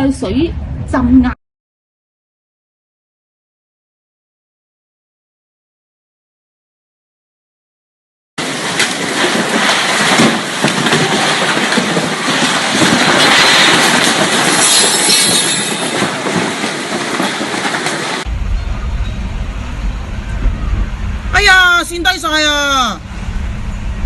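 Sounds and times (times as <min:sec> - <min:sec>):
knocks and clatter: 0:08.4 - 0:18.3
wind rushing: 0:11.5 - 0:24.0.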